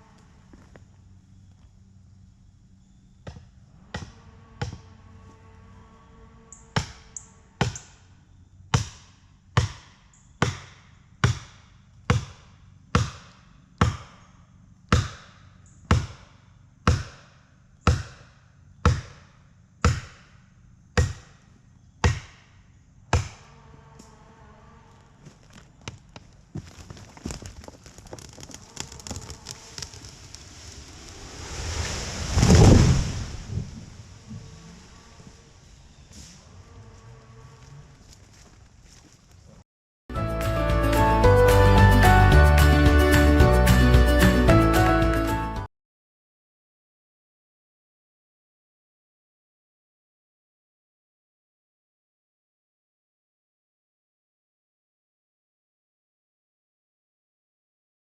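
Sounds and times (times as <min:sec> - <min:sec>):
heavy strikes on tree: 0:06.8 - 0:08.0, 0:08.7 - 0:14.3, 0:14.9 - 0:23.4
wood crackling and snapping: 0:25.2 - 0:34.3
tree crashing to ground: 0:25.4 - 0:35.0.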